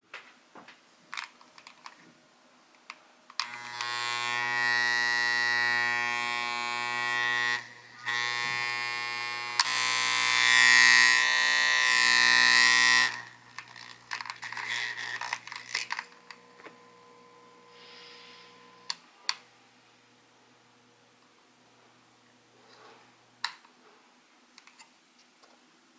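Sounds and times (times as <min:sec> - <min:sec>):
small clicks and handling knocks: 0:00.1 - 0:02.1, 0:24.6 - 0:25.6
electric massager motor buzzing: 0:03.4 - 0:19.0.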